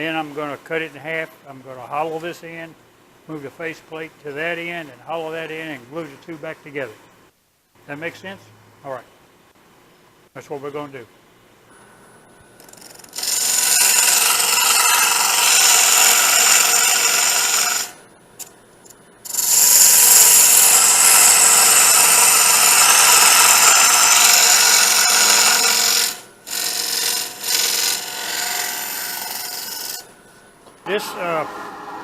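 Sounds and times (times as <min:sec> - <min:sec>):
power tool cutting wood: 0:12.7 - 0:18.0, 0:19.3 - 0:30.1.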